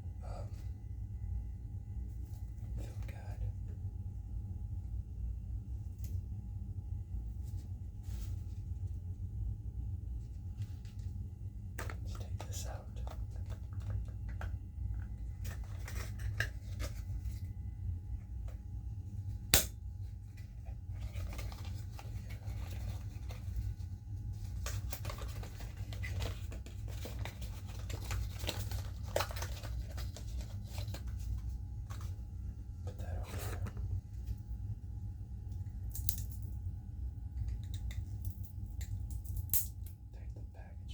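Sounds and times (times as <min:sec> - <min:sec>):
packaging rustling: 0:20.9 - 0:32.2.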